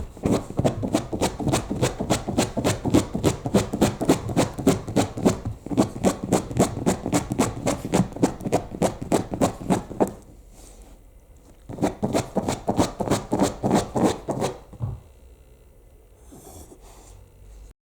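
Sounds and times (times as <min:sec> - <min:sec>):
dog scratching while digging: 0:00.0 - 0:10.2, 0:11.7 - 0:14.6.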